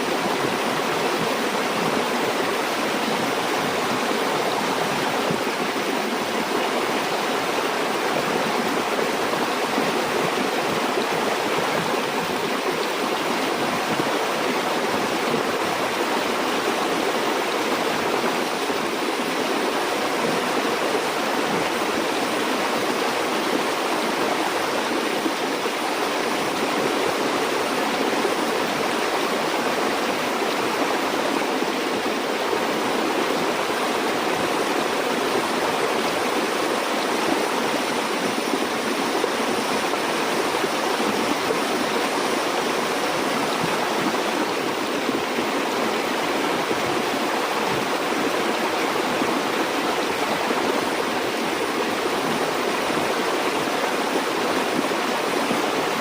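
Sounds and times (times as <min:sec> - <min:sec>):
stream flowing over rocks: 0:00.0 - 0:56.0.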